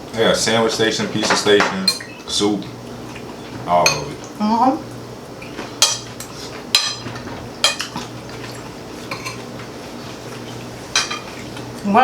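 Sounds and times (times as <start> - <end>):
cutlery clinking on plates: 1.2 - 2.3, 3.9 - 4.3, 5.4 - 9.5, 10.9 - 11.7.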